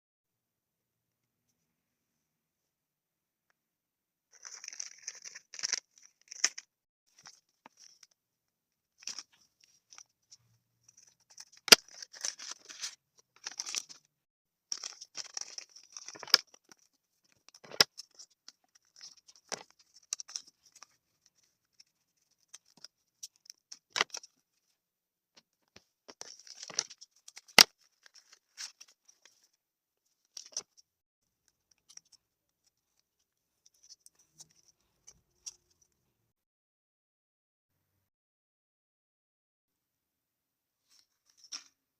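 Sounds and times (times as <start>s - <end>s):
paper crinkling and tearing: 4.4s - 6.6s.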